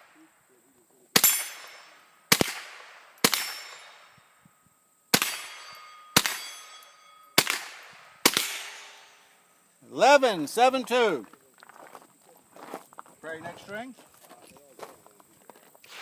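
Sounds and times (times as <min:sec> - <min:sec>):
rifle shots: 0:01.1 - 0:04.2, 0:05.1 - 0:09.3
steel plate ringing: 0:01.2 - 0:02.2, 0:03.2 - 0:04.4, 0:05.2 - 0:07.6.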